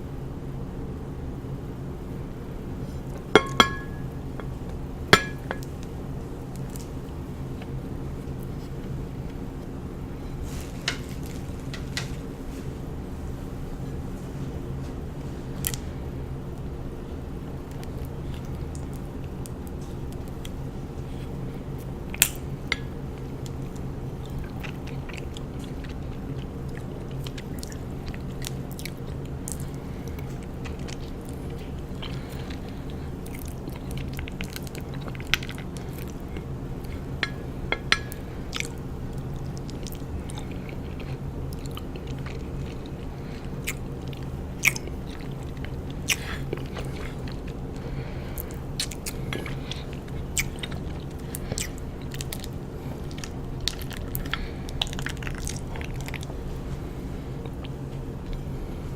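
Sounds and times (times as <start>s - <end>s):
steady low hum: 0.0s - 58.9s
chewing honeycomb: 17.5s - 58.8s.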